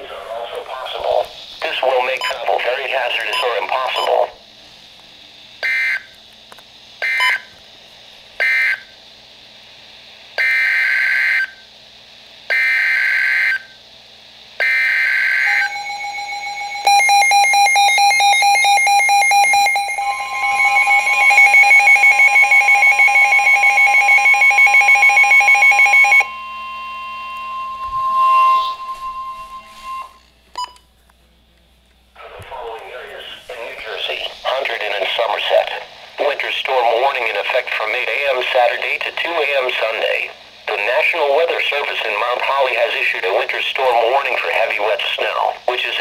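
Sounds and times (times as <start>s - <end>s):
warbling data tone bursts: 0.0s - 4.4s, 14.6s - 30.3s, 32.9s - 46.0s
steady attention tone: 0.0s - 4.5s, 14.6s - 30.9s, 32.2s - 46.0s.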